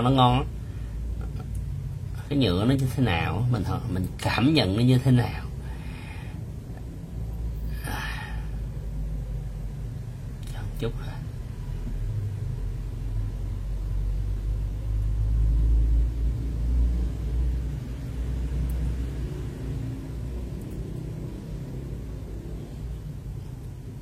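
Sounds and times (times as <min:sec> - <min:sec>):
low rumble: 0:11.2 - 0:24.0.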